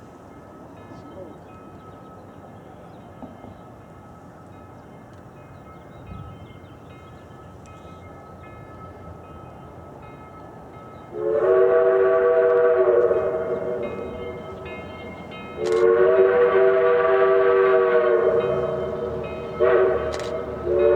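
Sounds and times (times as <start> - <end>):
steam locomotive whistle: 11.1 - 14.7, 15.5 - 20.9.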